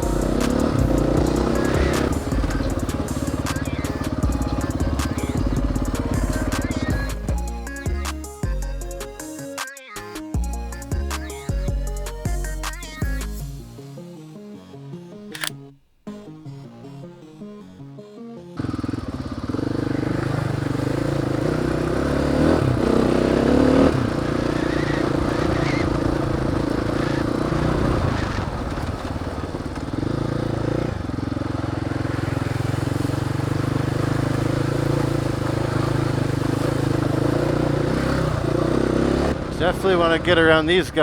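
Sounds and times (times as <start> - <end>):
wind and road noise: 0.0 - 7.4, 18.6 - 41.0
dirt bike engine revving: 0.0 - 7.8, 18.6 - 41.0.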